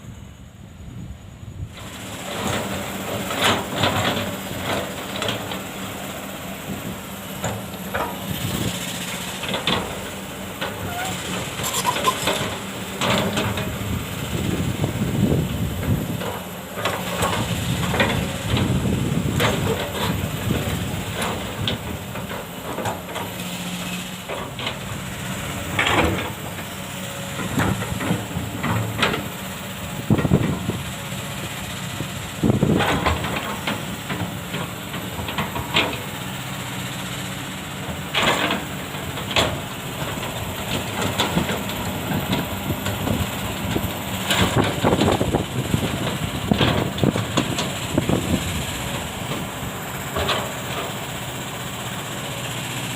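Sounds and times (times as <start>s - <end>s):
excavator diesel engine running: 0.0s - 52.9s.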